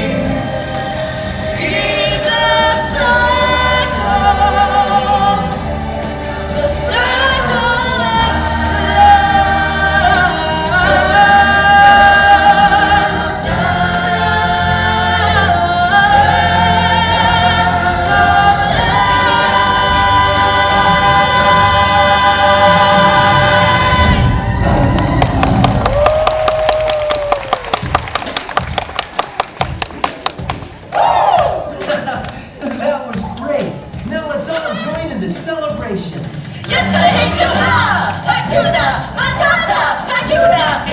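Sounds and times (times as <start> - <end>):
choir singing held notes: 0.0 - 26.2
musical accompaniment: 0.0 - 40.9.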